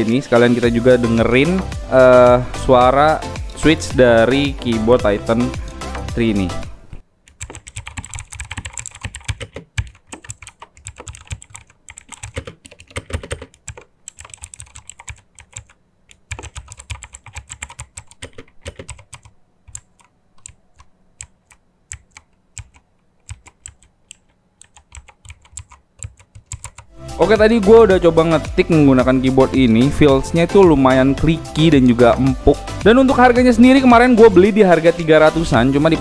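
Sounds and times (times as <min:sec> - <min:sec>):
clicky mechanical keyboard typing: 0:07.3 - 0:26.9.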